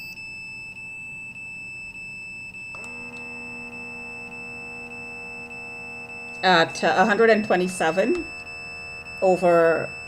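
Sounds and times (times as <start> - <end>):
high electronic tone: 0.0 - 10.0
pump motor buzzing: 2.7 - 10.0.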